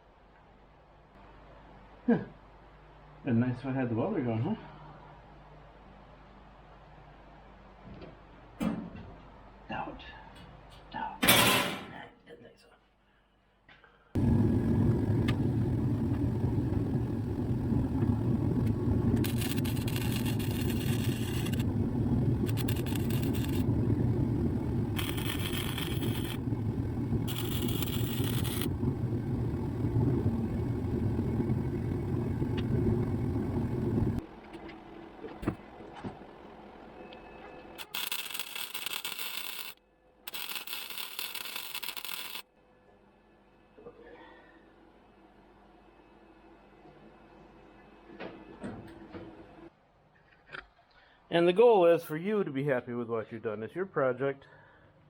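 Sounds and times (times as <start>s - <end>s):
welding arc crackling: 14.2s - 34.2s, 37.8s - 42.4s
low machine hum: 14.2s - 42.4s.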